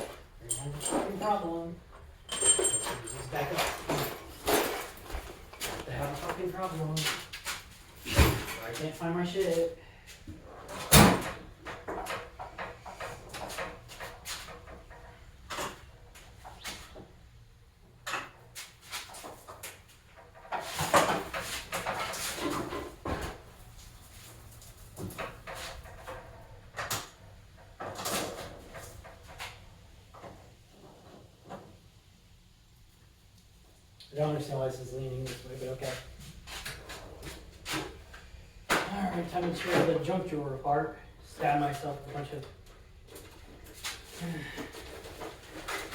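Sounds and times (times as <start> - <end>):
tools clattering: 0.0 - 6.8
parts and drawers rattling: 0.0 - 8.8, 43.1 - 45.9.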